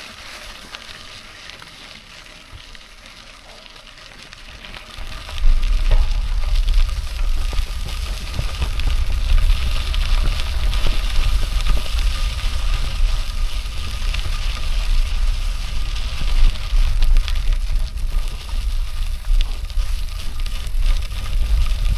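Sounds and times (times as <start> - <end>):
wind buffeting microphone: 5.0 - 21.9.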